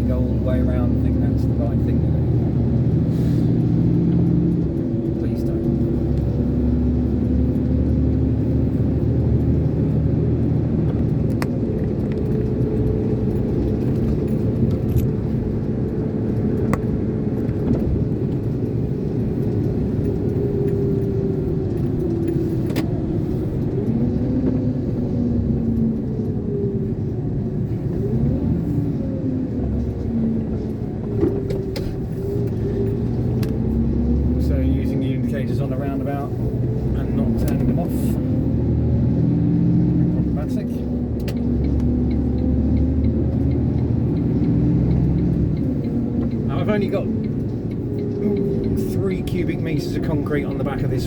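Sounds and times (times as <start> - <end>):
lorry diesel engine running: 0.0 - 51.0
road rumble: 0.0 - 51.0
sharp clicks and light rattles: 0.1 - 26.4, 39.5 - 51.0.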